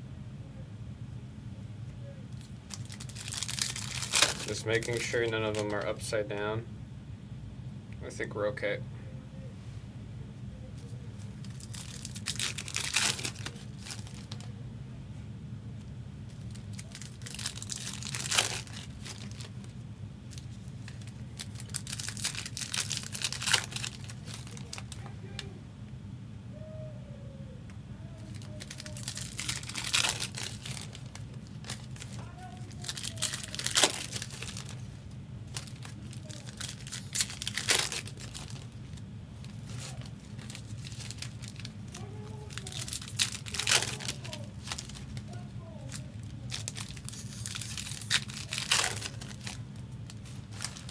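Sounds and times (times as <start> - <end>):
plastic wrappers tearing: 2.4 - 6.0, 11.3 - 14.5, 16.3 - 25.5, 28.2 - 50.9.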